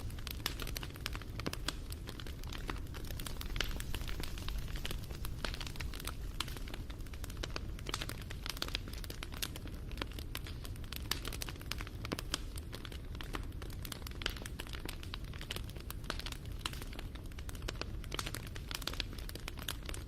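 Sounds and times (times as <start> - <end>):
low rumble of burning: 0.0 - 20.0
wood fire crackling and popping: 0.0 - 20.0.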